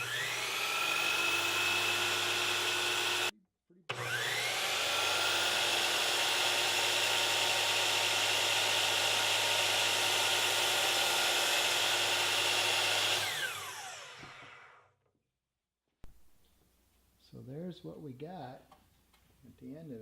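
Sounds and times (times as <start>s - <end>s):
miter saw motor whining: 0.0s - 3.3s, 3.9s - 14.9s.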